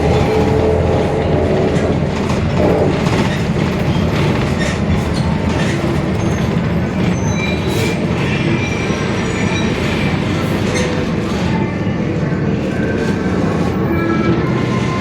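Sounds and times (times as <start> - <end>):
rear differential growling: 0.0 - 4.6
rattles and clicks: 0.0 - 7.2
diesel bus droning: 0.0 - 15.0.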